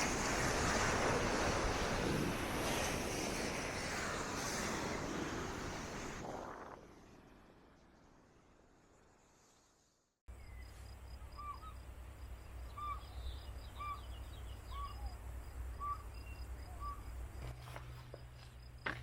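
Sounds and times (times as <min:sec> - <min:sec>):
crickets trilling: 0:10.3 - 0:19.0.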